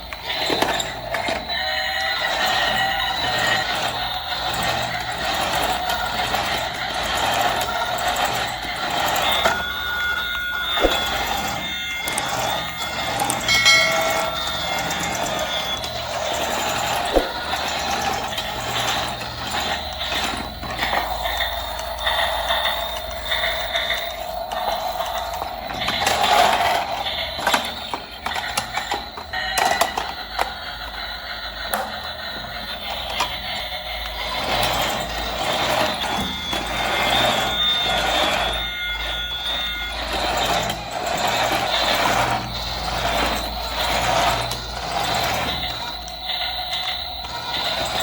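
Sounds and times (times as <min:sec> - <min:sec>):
toy gears whirring and clicking: 0:00.0 - 0:48.0
electronic beeping tones: 0:09.3 - 0:15.8, 0:16.4 - 0:19.9.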